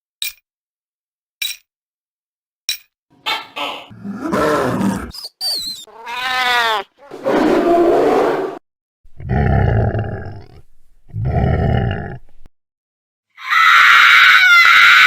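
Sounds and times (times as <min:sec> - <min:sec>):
woman screaming: 0:13.4 - 0:15.0.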